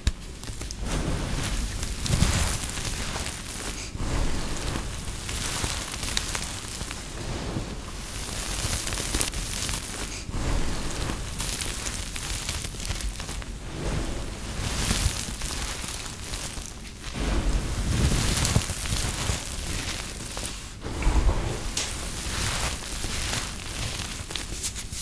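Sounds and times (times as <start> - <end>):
brittle soap crunching: 7.9 - 13.6, 14.5 - 17.2, 17.8 - 20.9, 21.8 - 25.0.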